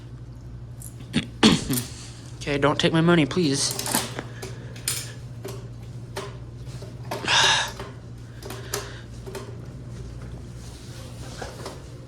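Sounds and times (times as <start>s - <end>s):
low electrical hum: 0.0s - 12.0s
coin mechanism rattle: 3.4s - 4.2s, 4.8s - 5.6s
coins clicking into vending machine: 3.4s - 9.6s.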